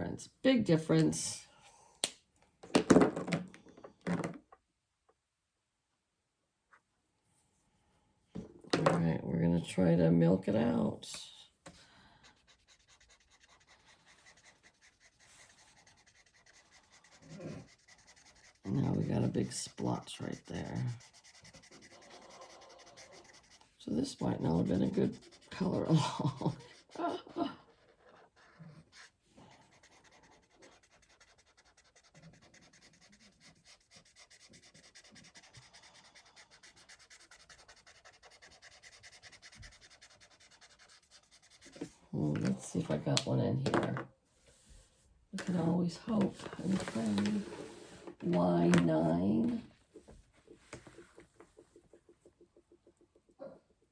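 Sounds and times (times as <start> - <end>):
marker scratching on paper: 12.2 - 42.0, 48.6 - 53.4.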